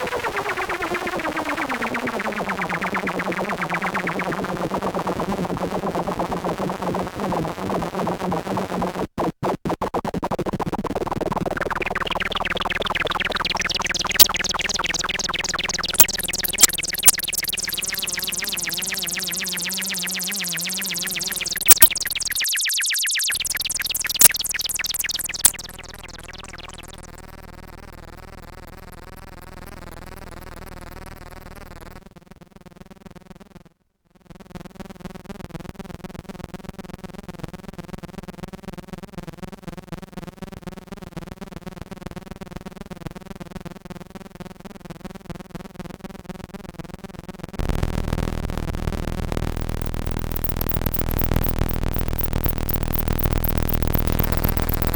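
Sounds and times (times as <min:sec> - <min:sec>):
fast-pulsing synthesizer: 0:00.0 - 0:08.9, 0:10.9 - 0:27.2, 0:47.6 - 0:54.9
wobbling synthesizer drone: 0:11.4 - 0:27.1, 0:47.6 - 0:54.9
loud noisy synth sound: 0:11.6 - 0:27.1
sharp clicks: 0:11.8 - 0:27.0, 0:49.5 - 0:54.9.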